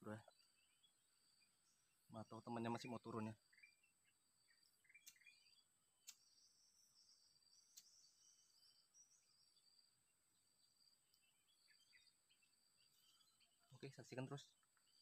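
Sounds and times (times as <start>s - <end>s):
faint high bird chirps: 0.0s - 15.0s
faint clicks: 5.0s - 5.4s, 6.0s - 6.3s.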